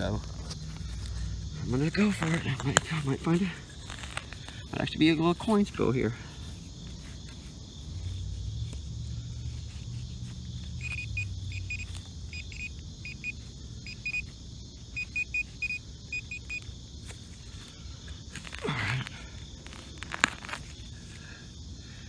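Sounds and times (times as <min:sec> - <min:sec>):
metal detector beeps: 0:10.8 - 0:14.3, 0:15.0 - 0:16.6.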